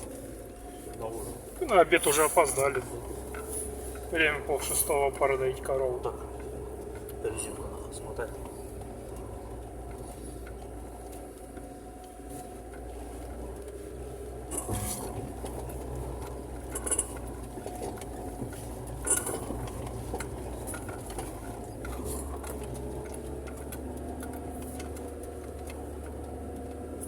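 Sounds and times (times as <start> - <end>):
vehicle engine hum inside cab: 0.0 - 27.0
knocks and rattles: 14.4 - 26.8.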